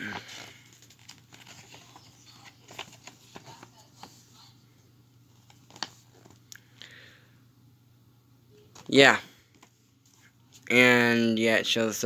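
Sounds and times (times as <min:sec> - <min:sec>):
hands rustling cardboard packaging: 0:00.0 - 0:04.5
low steady hum: 0:00.0 - 0:12.0.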